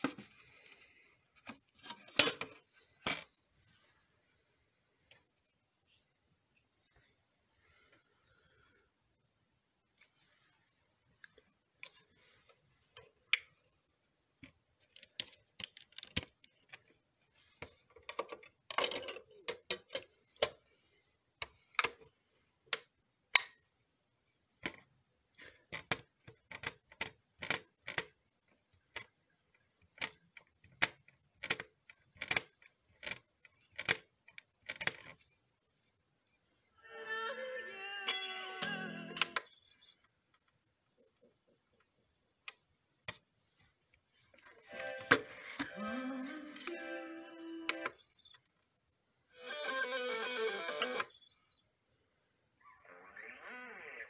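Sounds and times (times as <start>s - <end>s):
music playing: 44.7s - 47.9s.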